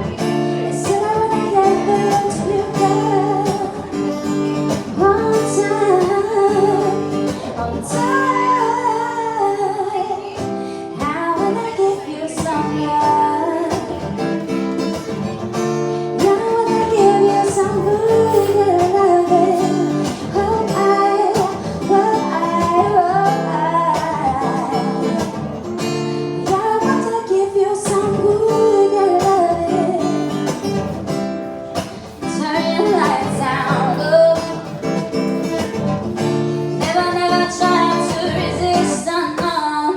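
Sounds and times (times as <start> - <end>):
person singing: 0.0 - 4.2, 4.8 - 14.6, 16.2 - 25.4
acoustic guitar strumming: 0.0 - 39.9.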